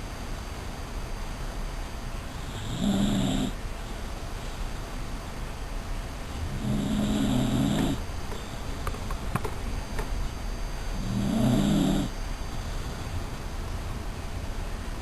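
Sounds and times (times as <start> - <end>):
dog snoring: 2.3 - 3.6, 6.4 - 8.5, 11.0 - 13.2
cat purring: 6.5 - 8.5, 11.0 - 12.1.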